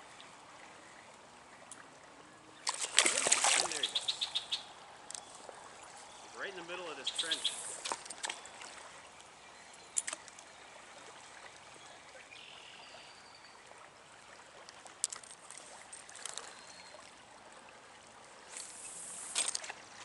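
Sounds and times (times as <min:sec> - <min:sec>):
stream flowing: 0:00.0 - 0:20.0
sharp clicks or small splashes: 0:02.6 - 0:04.2, 0:07.2 - 0:08.7, 0:10.0 - 0:10.5, 0:14.6 - 0:16.6, 0:18.5 - 0:19.8.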